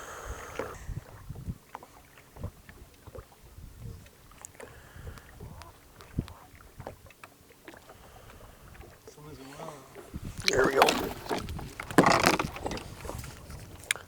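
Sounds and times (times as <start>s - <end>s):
gear clicking and knocking: 10.5s - 13.0s.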